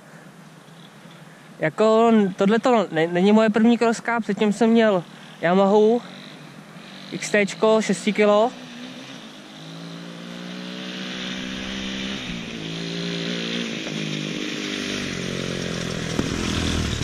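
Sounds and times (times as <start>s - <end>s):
dirt bike engine revving: 4.5s - 17.0s.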